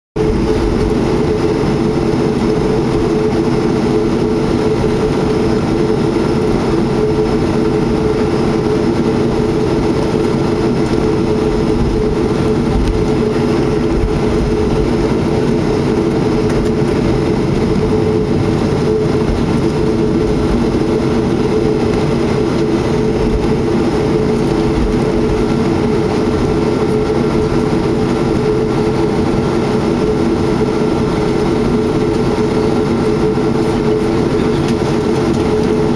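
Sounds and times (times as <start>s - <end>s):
jet engine cabin drone: 0.2s - 35.9s.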